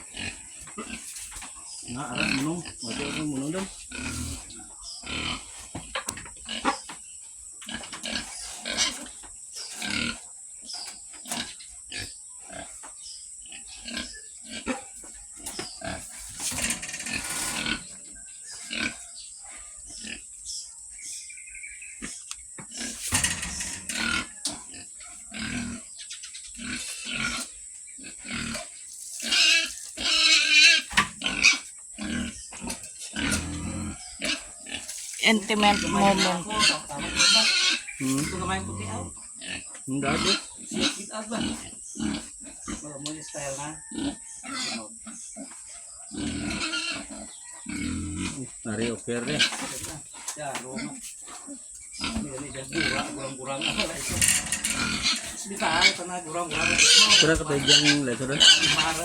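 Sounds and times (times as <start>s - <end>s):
pigs grunting: 0.0s - 7.0s, 7.6s - 21.3s, 21.9s - 59.0s
pig squealing: 1.8s - 6.8s, 22.0s - 49.9s, 52.0s - 59.0s.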